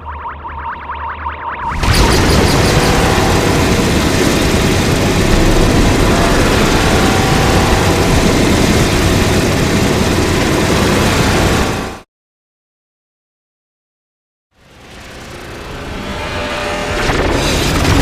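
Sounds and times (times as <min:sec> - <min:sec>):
deep rumbling rush: 0:01.6 - 0:12.0.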